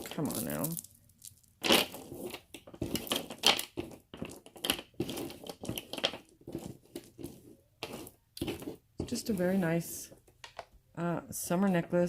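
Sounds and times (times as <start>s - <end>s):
plastic packaging crackling: 0.0s - 8.8s
bead necklace rustling: 0.0s - 10.4s.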